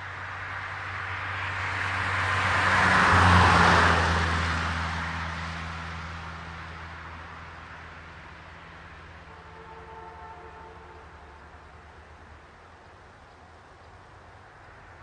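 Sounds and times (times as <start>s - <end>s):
car passing by: 0.3s - 9.8s.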